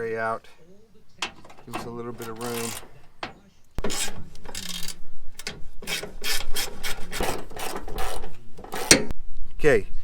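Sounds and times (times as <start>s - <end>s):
ratchet wrench rasping: 1.2s - 9.1s.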